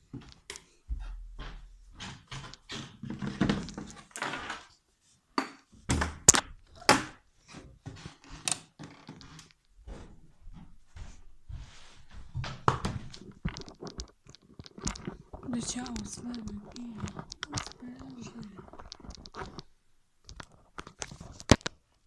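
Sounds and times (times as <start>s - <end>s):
knocks and thumps of handled objects: 0.0s - 4.6s, 12.1s - 21.8s
rustling scrapes: 7.4s - 12.4s, 13.0s - 19.7s.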